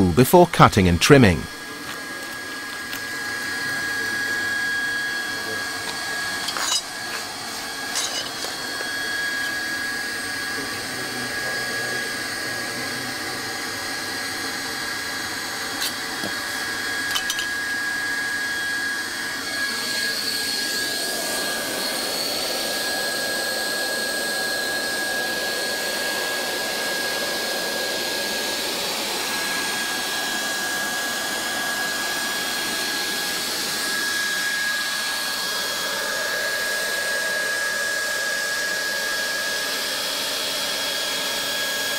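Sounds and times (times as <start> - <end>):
hot-air welding gun blowing: 1.6 - 9.8, 14.6 - 19.4.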